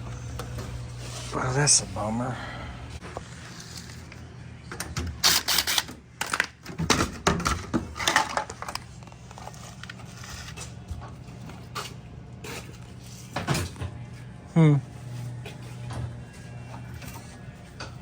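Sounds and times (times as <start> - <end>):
steady low hum: 0.0 - 4.8
clicks and clatters of tools: 4.8 - 10.6.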